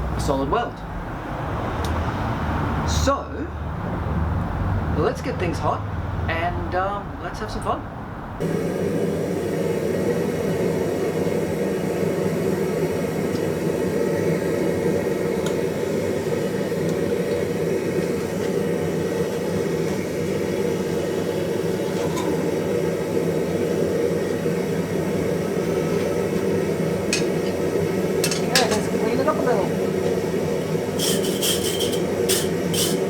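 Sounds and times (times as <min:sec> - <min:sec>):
forge fire rushing: 0:08.4 - 0:32.7.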